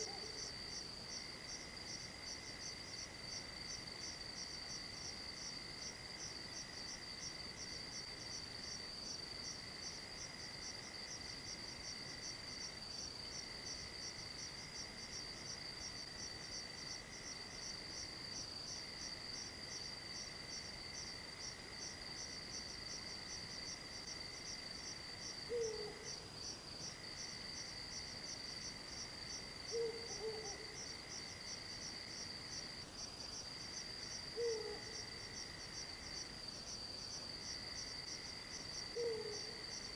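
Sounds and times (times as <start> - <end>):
night insects trilling: 0.0 - 39.9
owl hooting: 25.5 - 26.1, 29.7 - 30.7, 34.4 - 34.9, 39.0 - 39.6.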